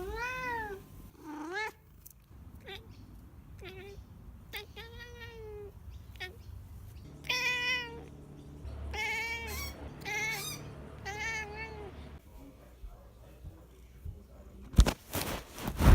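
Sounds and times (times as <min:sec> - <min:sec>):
cat meowing: 0:00.0 - 0:01.8, 0:03.6 - 0:06.4, 0:07.2 - 0:08.1, 0:08.8 - 0:12.1.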